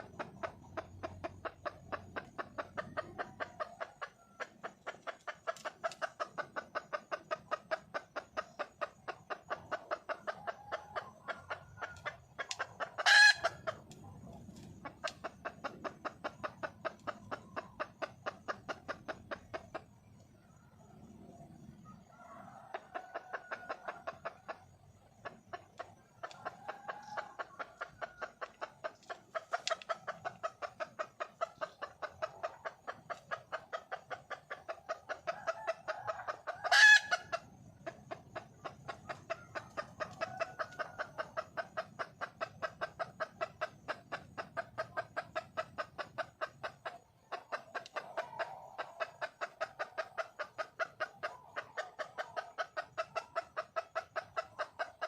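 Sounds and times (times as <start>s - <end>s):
hen clucking: 0.0s - 55.0s
sharp hen call: 13.0s - 13.6s.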